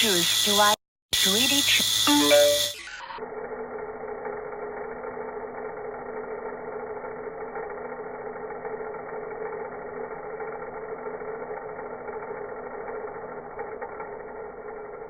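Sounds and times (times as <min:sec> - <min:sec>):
slowed vacuum cleaner drone: 0:00.0 - 0:15.0.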